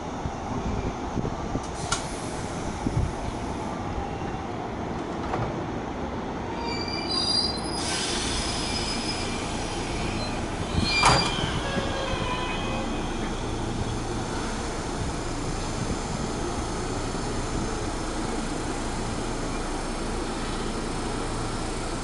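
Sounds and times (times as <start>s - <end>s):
train rumbling on rails: 0.0s - 22.0s
loud wheel screech: 6.6s - 12.8s.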